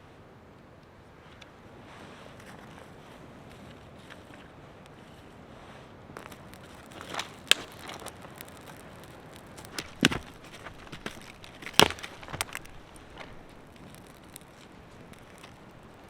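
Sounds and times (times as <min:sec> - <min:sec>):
campfire crackling: 0:02.9 - 0:16.0
sharp fire pops: 0:06.2 - 0:16.0.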